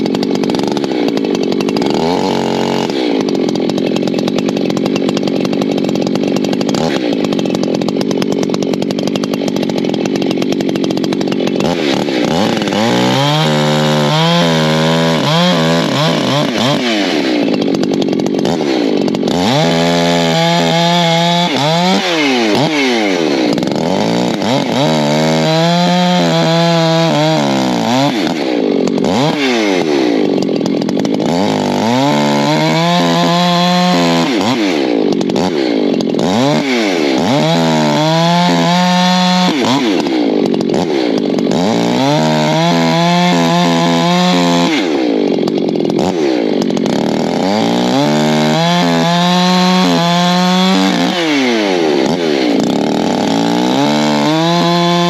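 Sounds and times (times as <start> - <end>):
chainsaw cutting logs: 0.0 - 55.0.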